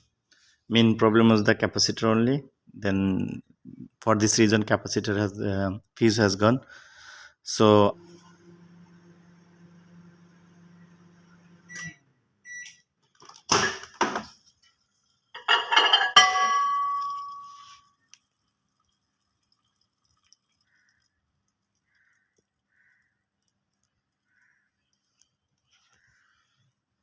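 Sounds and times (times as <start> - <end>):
low steady hum: 7.9 - 12.7
ringing clatter: 15.4 - 17.9.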